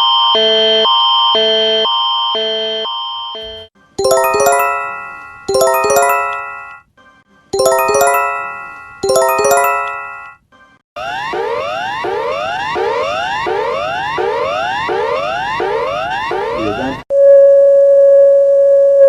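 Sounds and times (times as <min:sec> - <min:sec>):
bell-like electronic chime: 0:04.0 - 0:06.8, 0:07.6 - 0:10.4.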